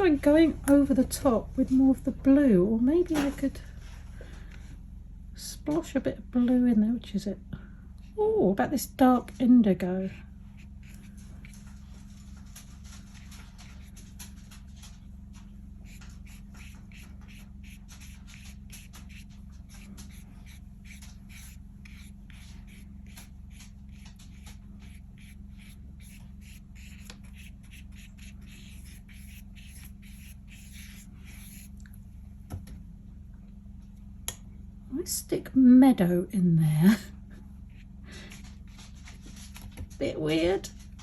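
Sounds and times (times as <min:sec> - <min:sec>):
steady low hum: 0:00.0 - 0:41.0
paintbrush scratching on paper: 0:10.0 - 0:14.2, 0:15.8 - 0:31.7.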